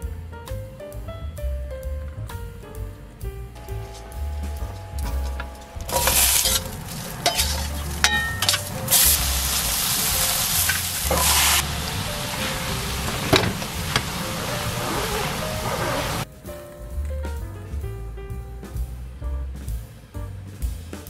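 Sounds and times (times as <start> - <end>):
food sizzling in a frying pan: 5.8 - 14.7.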